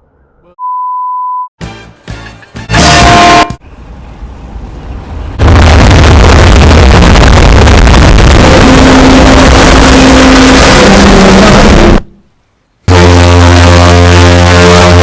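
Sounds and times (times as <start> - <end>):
clipped noise blast with rumble: 4.6 - 12.1.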